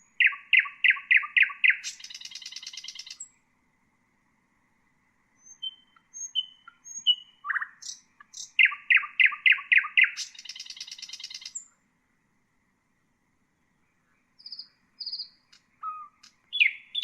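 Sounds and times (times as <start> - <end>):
nightingale singing: 0.0 - 3.5, 5.3 - 11.8, 13.7 - 17.0.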